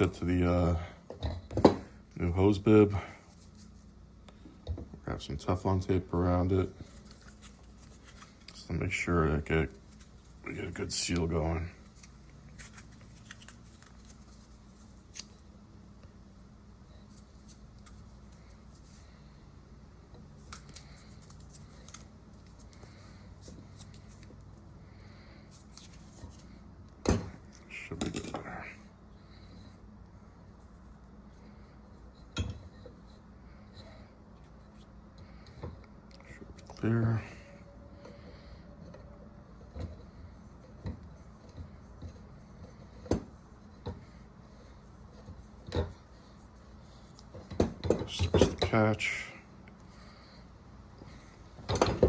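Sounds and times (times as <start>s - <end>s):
tape crackling rustle: 6.6s - 9.1s, 9.7s - 16.1s, 20.3s - 24.7s.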